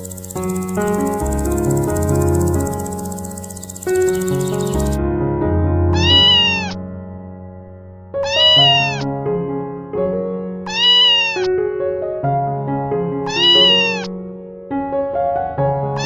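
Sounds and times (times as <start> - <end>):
cat meowing: 6.0 - 6.8, 8.2 - 9.1, 10.7 - 11.5, 13.3 - 14.1.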